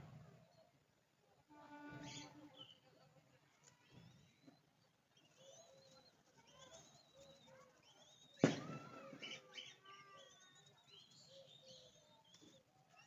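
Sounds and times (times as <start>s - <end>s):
birds chirping faintly: 0.0s - 13.0s.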